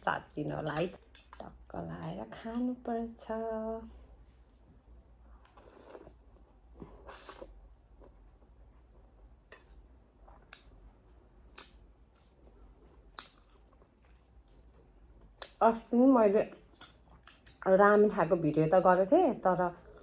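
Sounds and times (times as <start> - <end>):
person chewing noodle soup: 5.3 - 15.6, 16.6 - 17.6.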